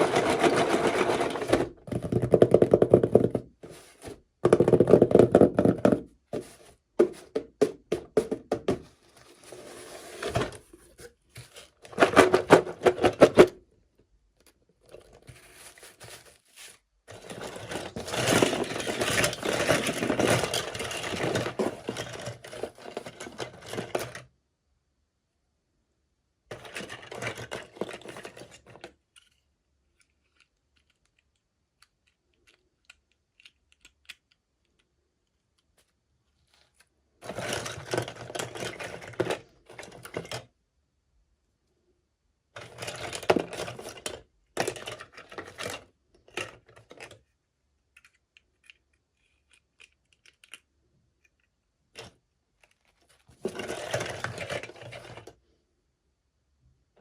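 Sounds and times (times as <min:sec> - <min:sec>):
packaging rustling and crinkling: 0:00.0 - 0:02.2, 0:14.9 - 0:24.2, 0:52.8 - 0:55.3
small plastic pieces clicking: 0:29.0 - 0:35.7, 0:47.8 - 0:52.9.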